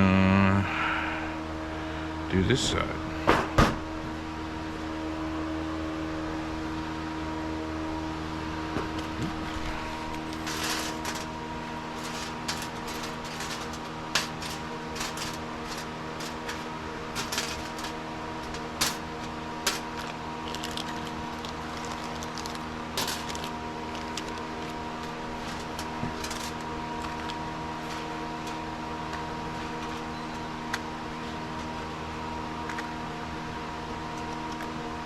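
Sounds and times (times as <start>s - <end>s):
steady hum: 0.0s - 35.0s.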